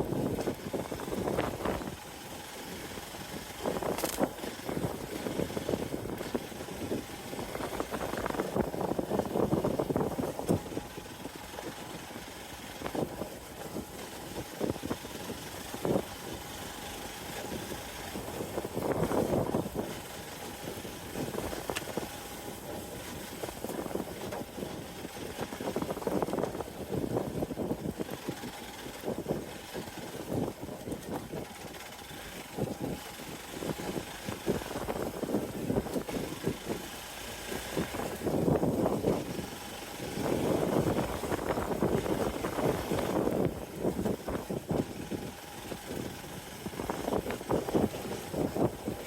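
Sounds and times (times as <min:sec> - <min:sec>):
motorcycle engine running: 0:00.0 - 0:49.0.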